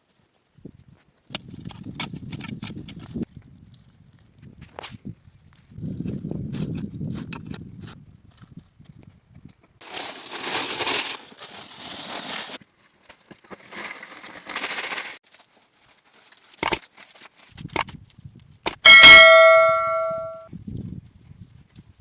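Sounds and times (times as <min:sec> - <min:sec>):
sharp knocks: 0:18.7 - 0:20.4
strike on metal ringing: 0:18.8 - 0:20.5.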